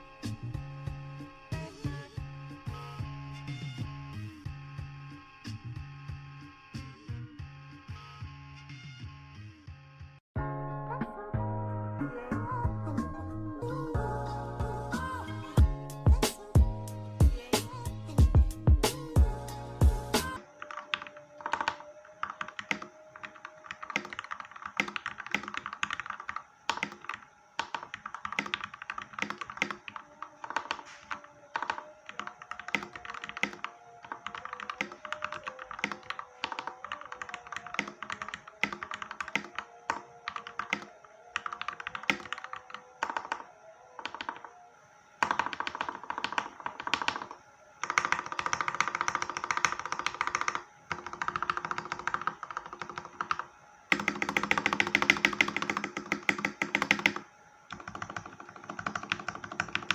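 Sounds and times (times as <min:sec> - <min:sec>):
background music: 0:00.0 - 0:59.9
mechanical keyboard typing: 0:20.3 - 0:44.6, 0:45.2 - 0:59.9.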